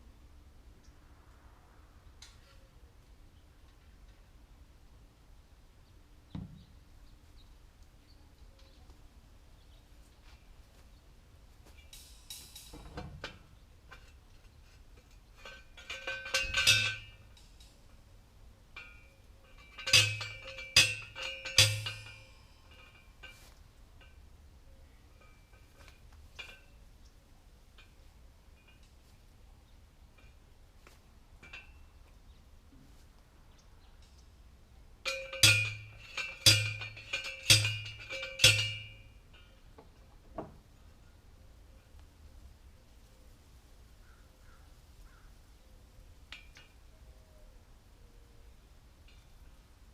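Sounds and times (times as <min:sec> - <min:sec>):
light metal clinks: 0:11.5 - 0:32.4, 0:35.0 - 0:42.0, 0:46.1 - 0:49.9
metal clanking: 0:11.6 - 0:18.0, 0:18.7 - 0:24.2, 0:35.0 - 0:39.9
ringing metal clangs: 0:11.6 - 0:27.0, 0:31.4 - 0:32.1, 0:35.0 - 0:40.5
heavy metal-on-metal blows: 0:19.6 - 0:22.5, 0:35.0 - 0:39.1.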